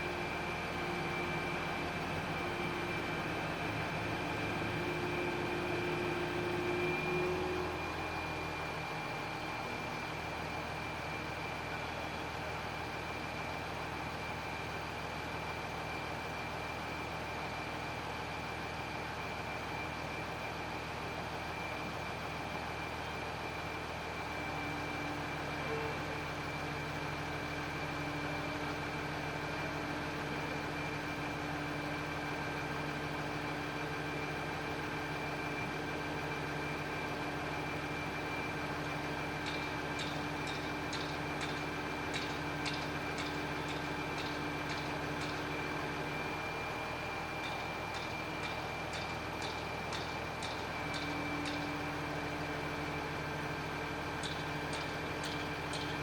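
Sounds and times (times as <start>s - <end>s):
heavy engine running: 0.0s - 56.0s.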